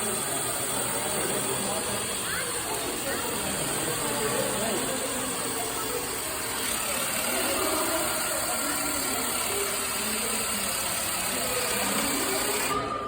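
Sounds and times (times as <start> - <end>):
electric drill boring into wood: 0.0 - 13.0.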